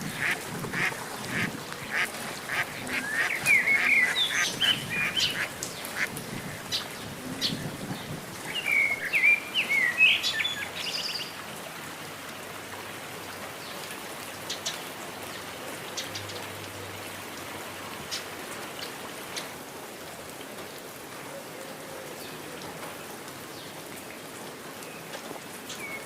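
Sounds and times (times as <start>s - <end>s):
sharp drips: 0.0s - 7.0s
rain pattering: 0.0s - 26.0s
bird chirping: 1.9s - 5.5s.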